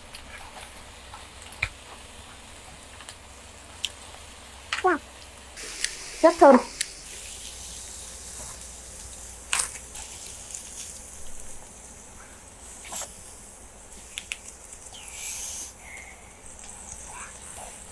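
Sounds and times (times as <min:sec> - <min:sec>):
brief hiss: 0:05.6 - 0:11.6, 0:12.7 - 0:16.3.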